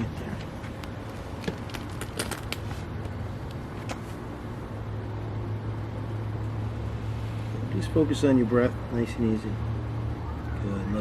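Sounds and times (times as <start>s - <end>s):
steady low hum: 0.0s - 11.0s
spine cracking and popping: 0.5s - 4.0s.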